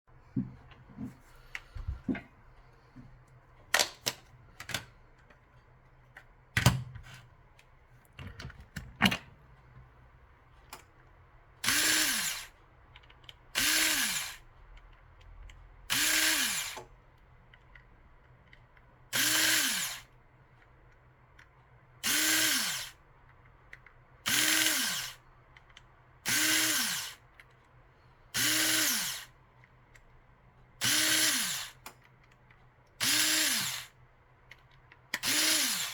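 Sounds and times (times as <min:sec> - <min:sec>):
electric screwdriver whirring: 0:11.6 - 0:12.5, 0:13.6 - 0:14.4, 0:15.9 - 0:16.9, 0:19.2 - 0:20.1, 0:22.0 - 0:23.0, 0:24.3 - 0:25.2, 0:26.3 - 0:27.2, 0:28.4 - 0:29.3, 0:30.8 - 0:31.8, 0:33.0 - 0:34.0, 0:35.2 - 0:35.9.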